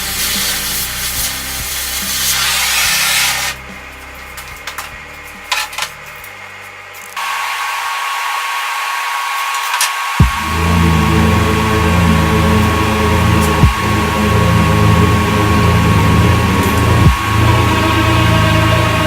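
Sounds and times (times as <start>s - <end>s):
power tool grinding steel: 0.0s - 3.8s, 7.2s - 19.0s
steady hiss: 0.0s - 8.4s.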